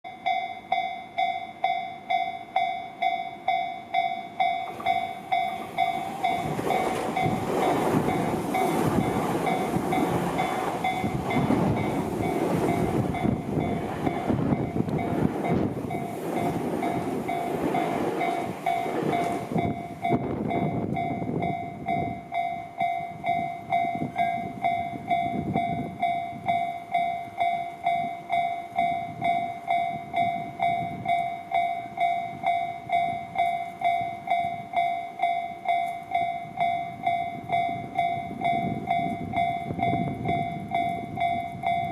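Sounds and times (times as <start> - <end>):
level-crossing warning bell: 0.1 - 41.9
train passing over crossing: 0.1 - 41.9.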